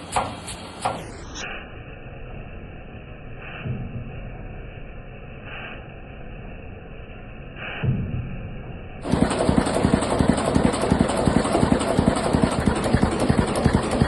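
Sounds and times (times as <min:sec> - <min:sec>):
boat engine knocking: 0:09.0 - 0:14.0.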